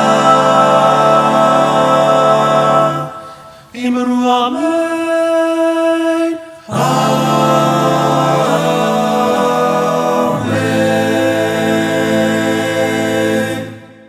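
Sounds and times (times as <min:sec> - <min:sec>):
choir singing a cappella: 0:00.0 - 0:14.0.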